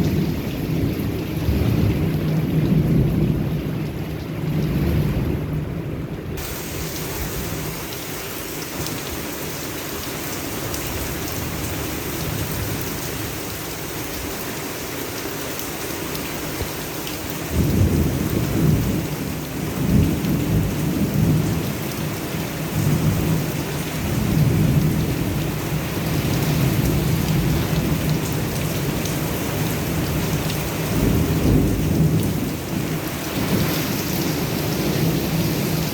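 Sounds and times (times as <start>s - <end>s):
heavy rain pouring: 0.0s - 35.9s
rolling thunder rumbling: 26.2s - 35.9s.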